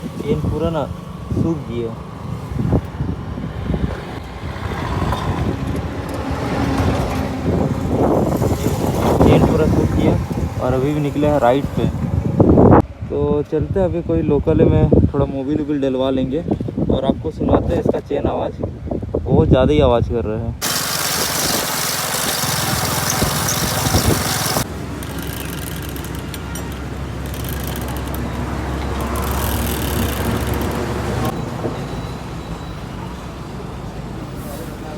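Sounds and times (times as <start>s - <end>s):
motorcycle engine rumble: 20.6s - 31.4s.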